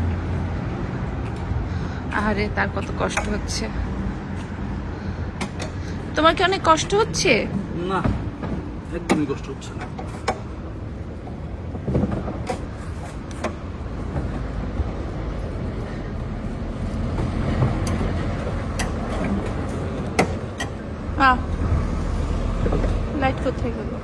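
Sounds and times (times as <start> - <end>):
road vehicle rumble: 0.0 - 24.0
sharp clicks and knocks: 2.1 - 3.6, 17.1 - 20.9.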